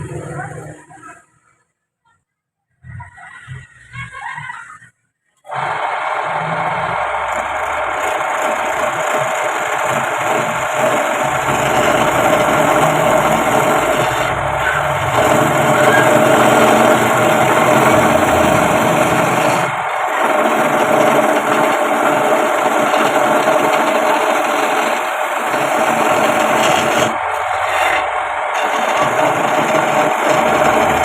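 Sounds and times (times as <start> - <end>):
wood lathe motor humming: 5.5 - 31.0
turning tool scraping wood: 7.3 - 31.0.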